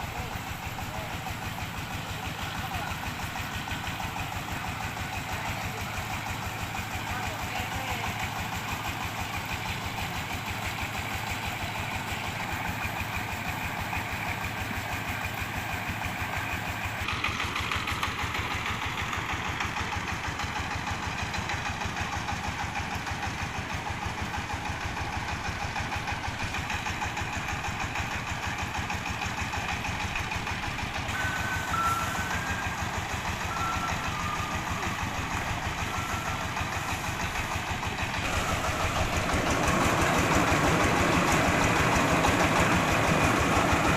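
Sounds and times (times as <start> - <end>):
diesel engine chugging: 0.0 - 43.9
short high-pitched tones: 31.1 - 37.2.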